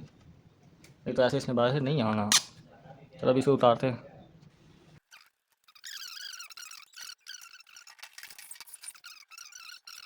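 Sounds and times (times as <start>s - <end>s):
high-pitched squeaky chirps: 5.1s - 10.0s.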